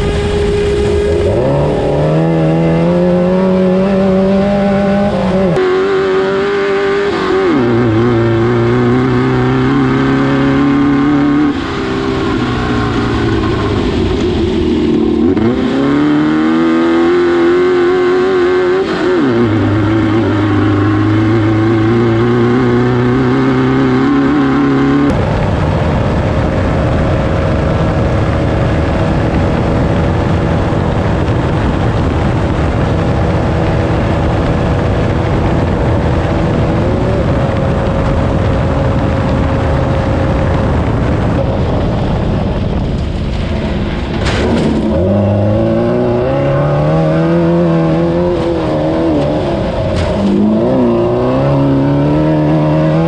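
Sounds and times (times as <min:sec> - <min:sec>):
buggy engine revving hard: 0:00.0 - 0:41.9, 0:44.1 - 0:53.0
rush of noise: 0:00.0 - 0:53.0.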